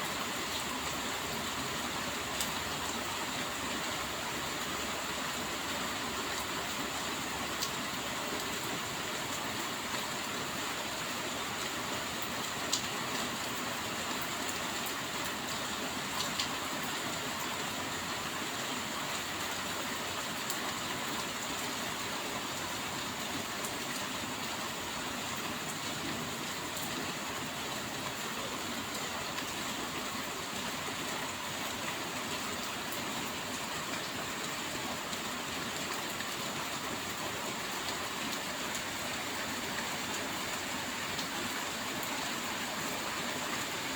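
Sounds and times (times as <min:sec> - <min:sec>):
steady rain falling: 0:00.0 - 0:43.9.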